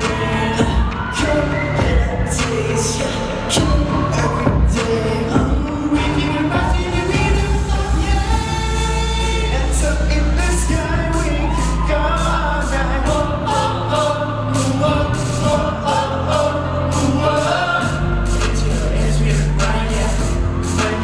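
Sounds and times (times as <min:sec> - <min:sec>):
pop song with sung vocals: 0:00.0 - 0:21.0.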